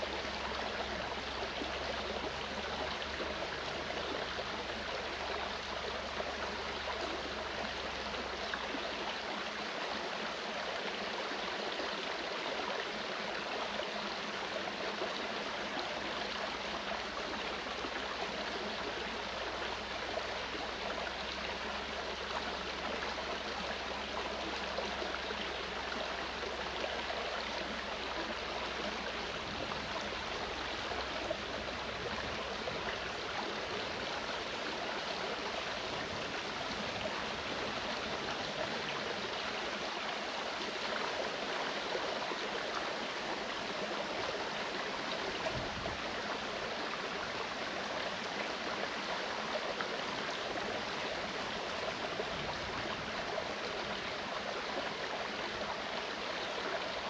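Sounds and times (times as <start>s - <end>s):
stream flowing over rocks: 0.0s - 57.0s.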